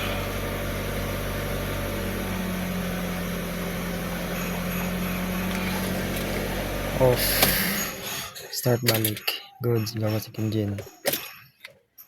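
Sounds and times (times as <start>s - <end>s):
car engine idling: 0.0s - 9.0s.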